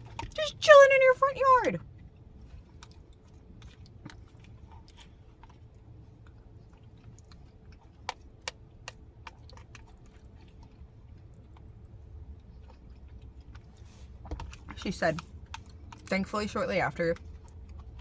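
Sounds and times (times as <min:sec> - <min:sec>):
low steady hum: 0:00.0 - 0:18.0
person chewing food: 0:01.8 - 0:18.0.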